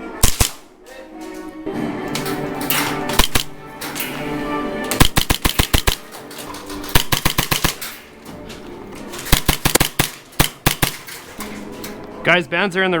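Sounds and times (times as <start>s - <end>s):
airsoft guns firing: 0.2s - 0.8s, 2.1s - 8.2s, 9.1s - 11.5s.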